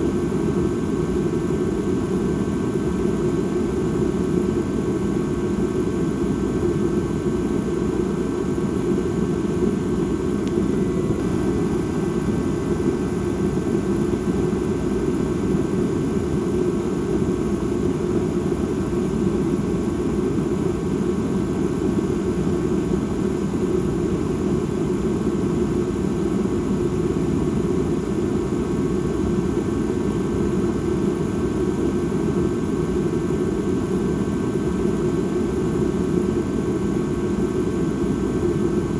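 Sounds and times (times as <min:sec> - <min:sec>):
low ambient drone: 0:00.0 - 0:24.8.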